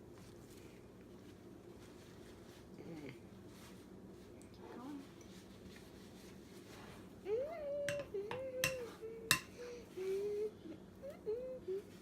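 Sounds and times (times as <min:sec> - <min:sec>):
spoon knocking against cup: 0:07.9 - 0:09.5.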